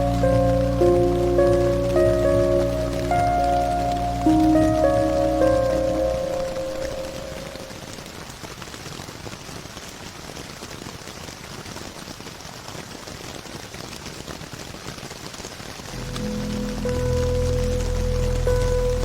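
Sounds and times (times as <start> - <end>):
low ambient music pad: 0.0 - 8.0, 15.9 - 19.0
rain patter: 0.0 - 19.0.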